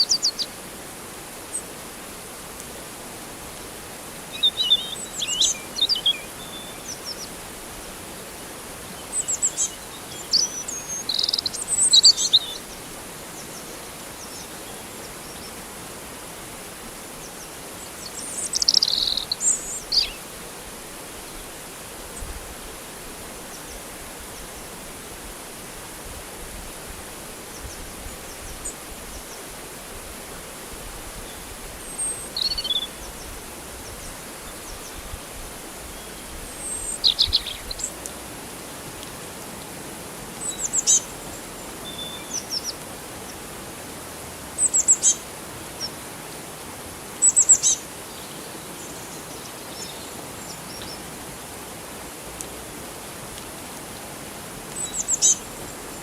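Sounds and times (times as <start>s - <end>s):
flowing river water: 0.0s - 56.0s
birds chirping: 9.0s - 12.8s, 18.0s - 20.3s, 31.3s - 35.1s, 35.8s - 38.0s.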